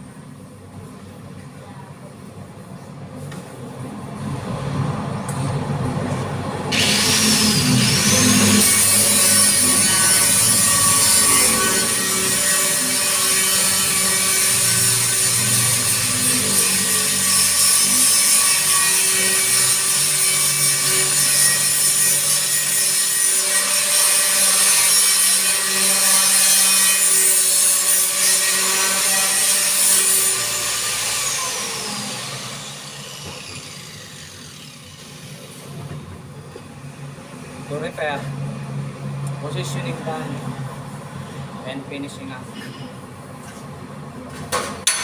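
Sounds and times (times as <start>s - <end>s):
electric sanding grinder whining: 6.7s - 35.6s.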